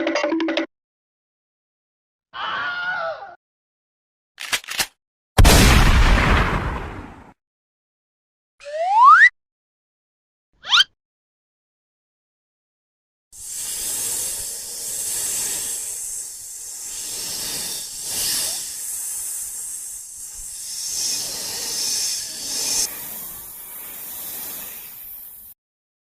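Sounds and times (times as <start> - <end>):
long hissing noise: 13.4 - 25.6.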